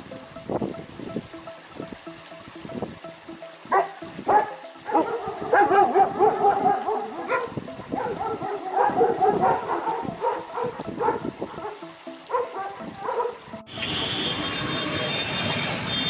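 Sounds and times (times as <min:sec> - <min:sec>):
dog whining and yipping: 0:03.7 - 0:13.4
dog yelping: 0:03.7 - 0:13.4.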